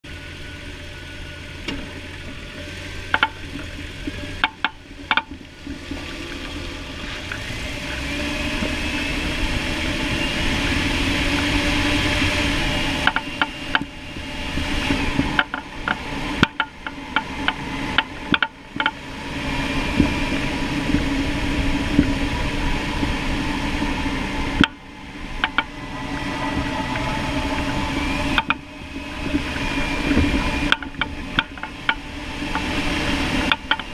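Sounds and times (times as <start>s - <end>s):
steady noise: 0.0s - 33.9s
car suspension clicking and knocking: 1.6s - 8.8s, 12.9s - 14.0s, 14.8s - 19.0s, 24.5s - 24.8s, 25.4s - 33.9s.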